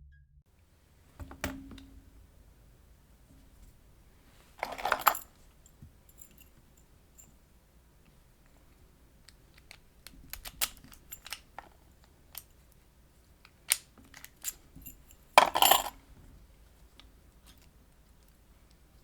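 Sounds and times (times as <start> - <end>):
lockpicking metal clicks: 9.2 - 11.6.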